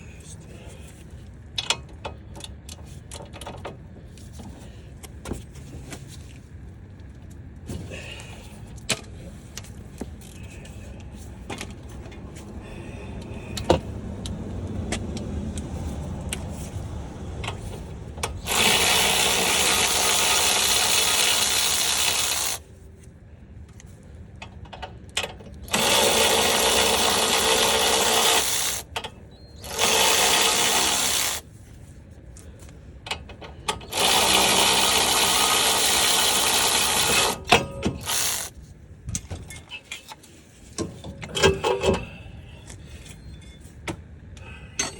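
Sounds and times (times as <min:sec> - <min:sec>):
power tool running: 0:18.4 - 0:22.6, 0:25.7 - 0:28.9, 0:29.6 - 0:31.4, 0:33.8 - 0:38.5.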